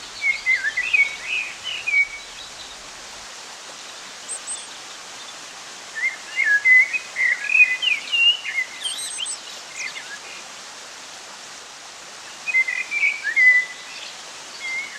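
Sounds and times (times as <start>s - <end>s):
songbird singing: 0.0s - 10.4s, 12.2s - 14.9s
rush of falling water: 0.0s - 14.9s.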